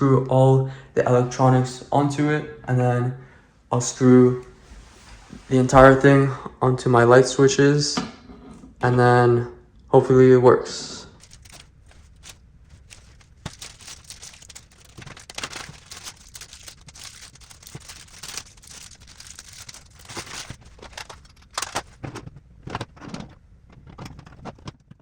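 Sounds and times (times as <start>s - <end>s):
small parts clicking and tapping: 11.2s - 25.0s.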